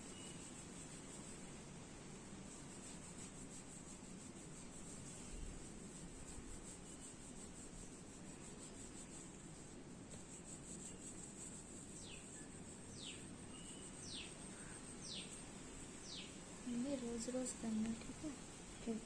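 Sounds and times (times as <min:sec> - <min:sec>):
hands rubbing hair and scalp: 0:00.0 - 0:01.6, 0:02.2 - 0:14.4.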